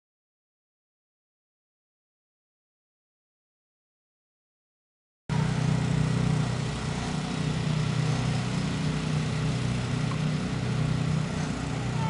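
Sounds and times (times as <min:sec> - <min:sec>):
engine running: 0:05.3 - 0:12.0.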